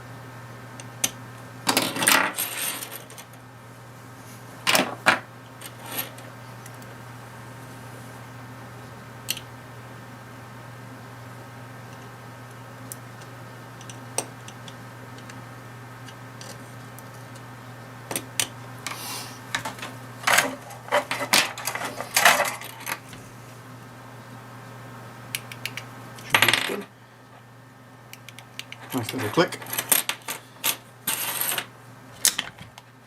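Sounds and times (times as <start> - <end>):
tools clattering: 19.6 - 23.0.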